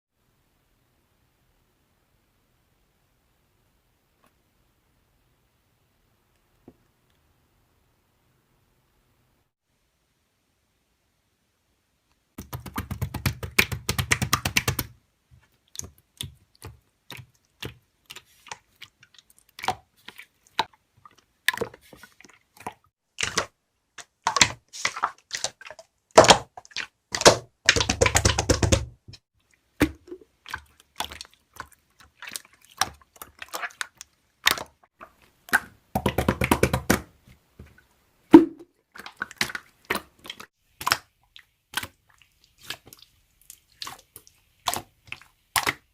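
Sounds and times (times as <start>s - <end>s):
slime clicking and popping: 45.5s - 45.9s.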